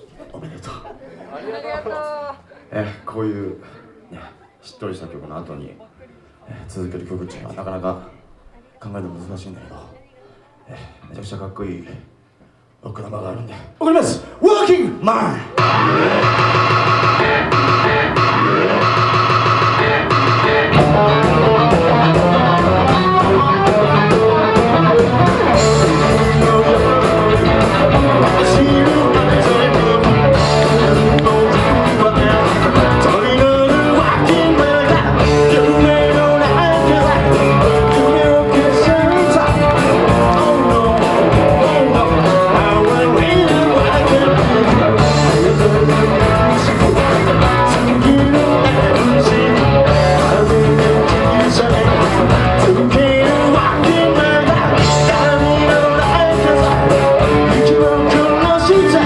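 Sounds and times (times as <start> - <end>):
electric guitars: 15.5 - 59.0
rock band playing live: 15.5 - 59.0.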